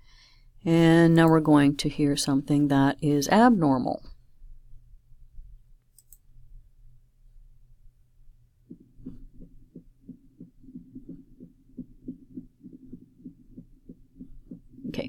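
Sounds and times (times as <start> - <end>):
irregular heartbeat: 8.6 - 15.0.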